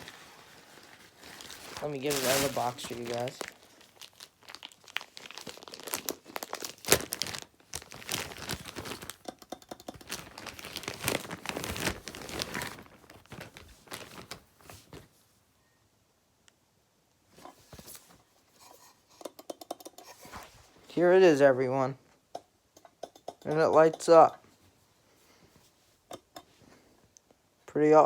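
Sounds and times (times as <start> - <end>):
packaging crinkling and tearing: 0.0 - 9.2, 10.0 - 15.1.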